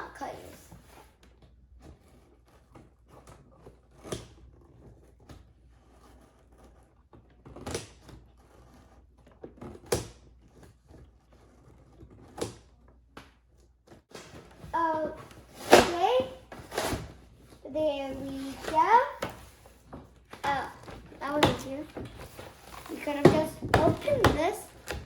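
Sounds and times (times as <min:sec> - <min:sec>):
scissors cutting tape and cardboard: 0:01.5 - 0:13.6, 0:14.2 - 0:19.6, 0:20.3 - 0:25.0
box being handled: 0:14.1 - 0:25.0.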